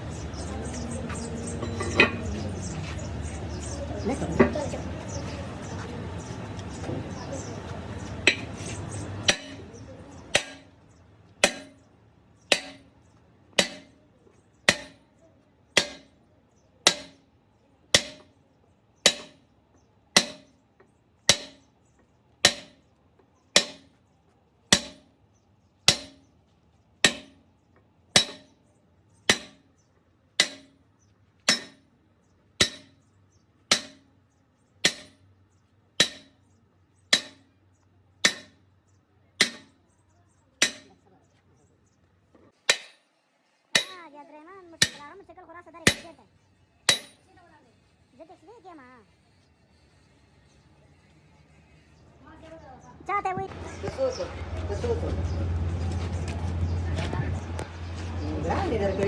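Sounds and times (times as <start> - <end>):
hammer striking metal: 8.2 - 8.6, 9.2 - 9.7, 10.3 - 10.8, 11.4 - 11.9, 12.5 - 12.9, 13.6 - 14.0, 14.7 - 15.1, 15.8 - 16.2, 16.9 - 17.2, 18.0 - 18.4, 19.0 - 19.5, 20.2 - 20.6, 21.3 - 21.7, 22.4 - 22.8, 23.6 - 24.0, 24.7 - 25.2, 25.9 - 26.3, 27.0 - 27.4, 28.2 - 28.6, 29.3 - 29.7, 30.4 - 30.8, 31.5 - 31.9, 32.6 - 33.0, 33.7 - 34.1, 34.8 - 35.2, 36.0 - 36.4, 37.1 - 37.5, 38.2 - 38.6, 39.4 - 39.8, 40.6 - 41.0, 42.6 - 43.1, 43.7 - 44.0, 44.8 - 45.1, 45.8 - 46.2, 46.9 - 47.3.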